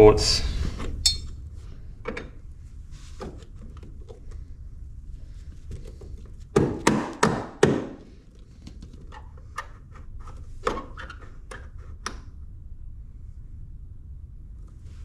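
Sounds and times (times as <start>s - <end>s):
sharp knocks: 6.5s - 8.0s.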